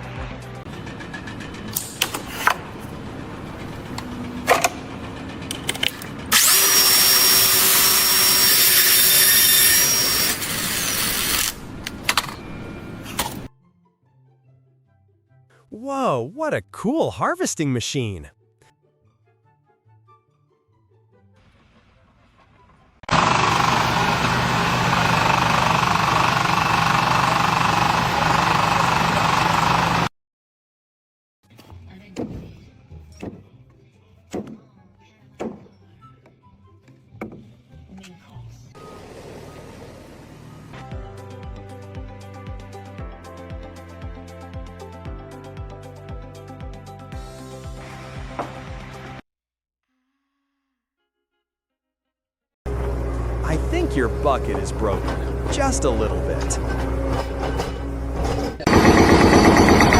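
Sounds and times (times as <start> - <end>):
power tool running: 0.8 - 12.0, 23.1 - 30.1, 52.7 - 59.9
heavy machine rattling: 56.6 - 59.9.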